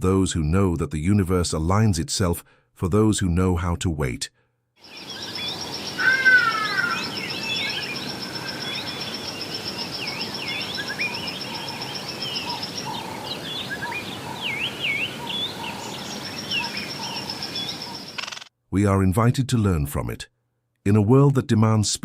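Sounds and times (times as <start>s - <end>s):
birds chirping and whistling: 4.8s - 18.4s.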